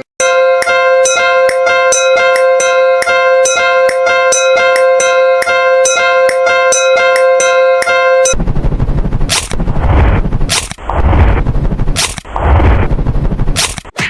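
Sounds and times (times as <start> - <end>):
ringing repeated tone: 0.2 - 10.3
crackling bangs with low rumble: 8.3 - 14.0.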